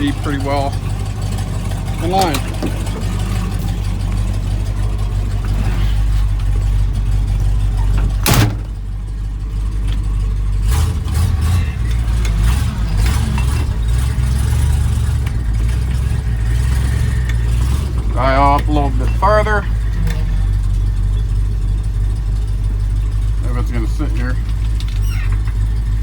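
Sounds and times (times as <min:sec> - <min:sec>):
truck engine idling: 0:00.0 - 0:26.0
sharp bang: 0:08.2 - 0:08.8.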